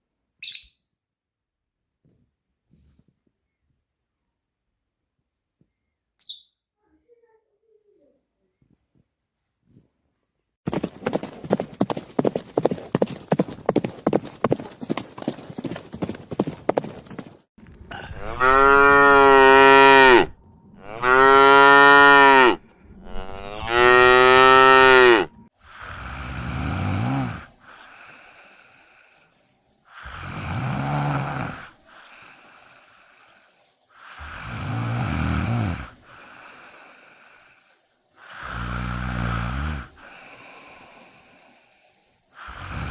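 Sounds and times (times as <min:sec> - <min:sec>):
cattle mooing: 0:17.9 - 0:25.4.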